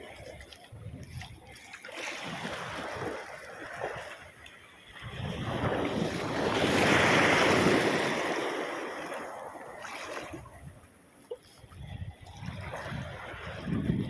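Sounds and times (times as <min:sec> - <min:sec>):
sea wave surging: 0:02.1 - 0:10.5.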